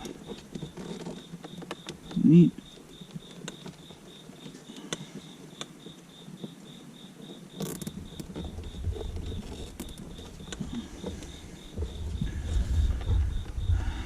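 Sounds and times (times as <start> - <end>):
crackling rustle: 0.0 - 14.0
hands rustling wiring: 7.3 - 14.0
low rumble: 10.6 - 14.0.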